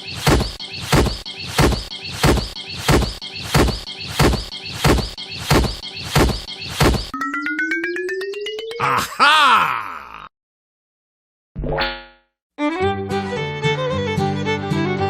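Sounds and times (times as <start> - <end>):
regular thumps: 0.0 - 7.2
rising tone with fast ticking: 7.0 - 8.8.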